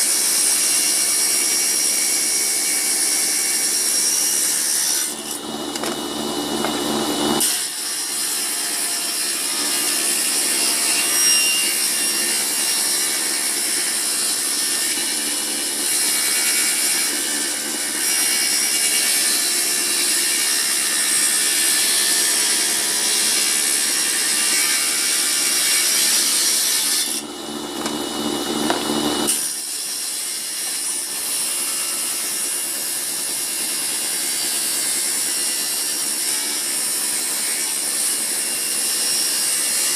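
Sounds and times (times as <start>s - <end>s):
table saw cutting wood: 0.0s - 39.9s
saw blade humming idle: 4.2s - 7.6s, 24.8s - 29.8s.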